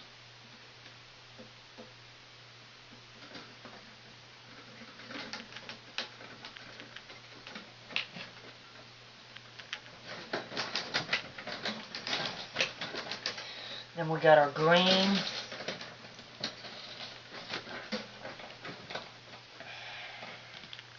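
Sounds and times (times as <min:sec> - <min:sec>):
faint steady hum: 0:00.0 - 0:20.9
wires and connectors clicking: 0:04.5 - 0:13.6, 0:20.5 - 0:20.9.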